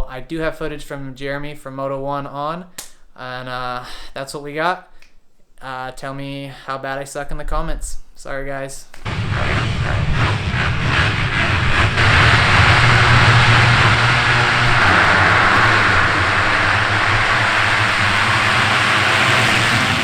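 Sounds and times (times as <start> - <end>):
motocross bike engines revving: 9.1 - 20.0.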